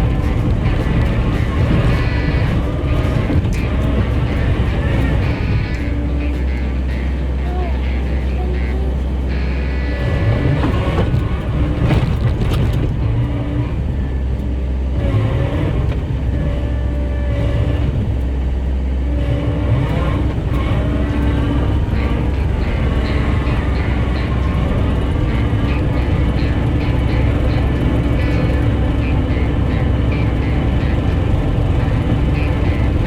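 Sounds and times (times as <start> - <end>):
skid steer engine running: 0.0 - 33.0.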